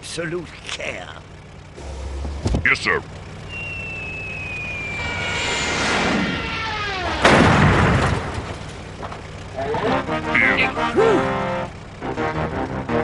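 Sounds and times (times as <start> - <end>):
descending cartoon whistle: 3.5 - 7.2
loud crash or boom: 4.9 - 8.6.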